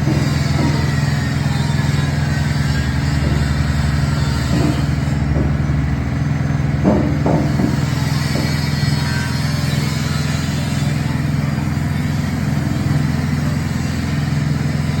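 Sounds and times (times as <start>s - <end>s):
engine running steadily: 0.0s - 15.0s
press machine knocks: 4.5s - 5.9s, 6.7s - 8.8s.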